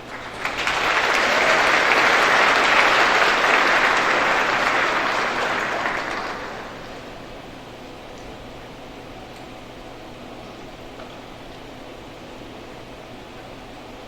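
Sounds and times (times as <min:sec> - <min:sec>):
audience applauding: 0:00.0 - 0:07.3.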